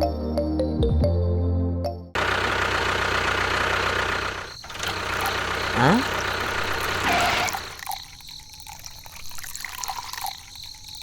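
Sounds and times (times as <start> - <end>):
small motor running: 2.2 - 8.0
water trickling and dripping: 4.7 - 11.0.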